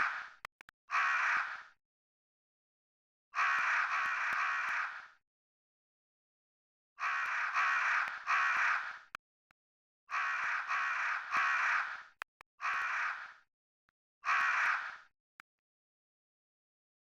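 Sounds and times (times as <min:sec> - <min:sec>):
crow cawing: 0:00.0 - 0:01.8, 0:03.4 - 0:05.2, 0:07.0 - 0:09.1, 0:10.1 - 0:13.5, 0:14.2 - 0:15.1.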